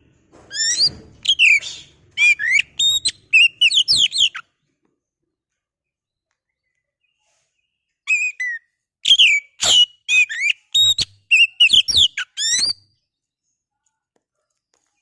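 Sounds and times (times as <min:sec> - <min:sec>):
bird singing whistled notes: 0:00.5 - 0:04.4, 0:08.1 - 0:13.0.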